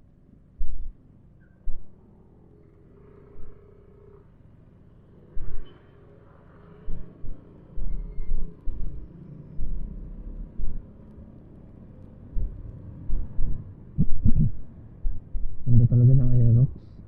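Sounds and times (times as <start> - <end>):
low thumps: 6.9 - 10.9, 12.3 - 16.4.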